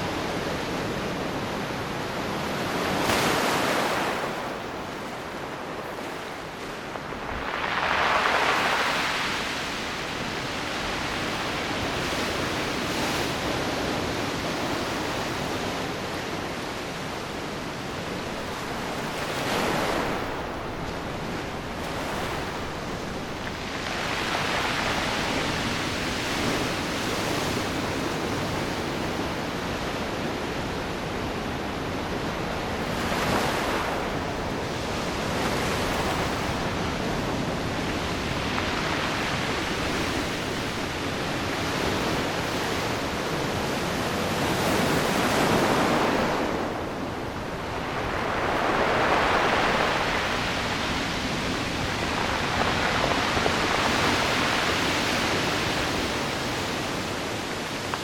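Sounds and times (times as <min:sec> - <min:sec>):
surf hissing on shore: 0:00.0 - 0:58.0
wave breaking: 0:05.8 - 0:10.6, 0:35.8 - 0:56.2.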